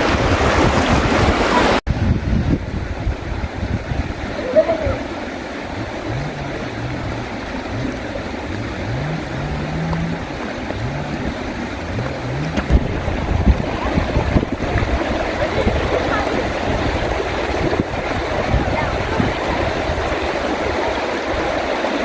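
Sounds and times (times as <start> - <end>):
running water rushing: 0.0 - 22.0
low rising hum: 5.4 - 17.6
low thumps: 5.7 - 19.3.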